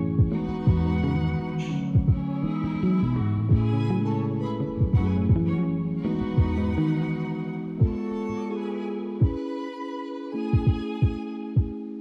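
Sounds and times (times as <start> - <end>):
slow soft background music: 0.0 - 12.0
low soft thump: 1.9 - 2.4, 3.4 - 3.8, 4.8 - 5.6.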